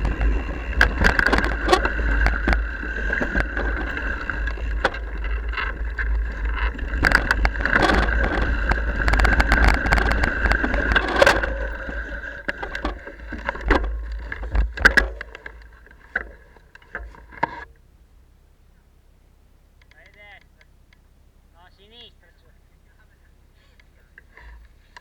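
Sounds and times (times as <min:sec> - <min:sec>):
wind rumbling on microphone: 0:00.0 - 0:14.8
bike rattling with sharp clicks: 0:00.0 - 0:17.8
bike tyres on dirt: 0:00.0 - 0:17.9.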